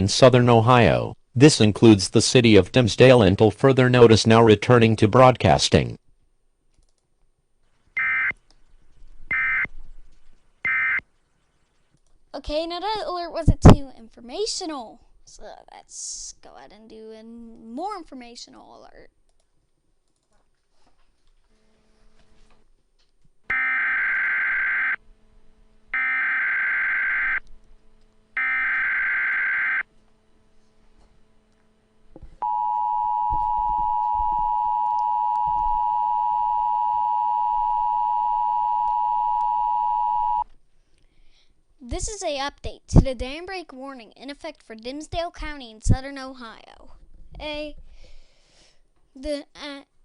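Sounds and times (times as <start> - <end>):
buzzing digital data bursts: 23.5 - 25.0, 25.9 - 27.4, 28.4 - 29.8.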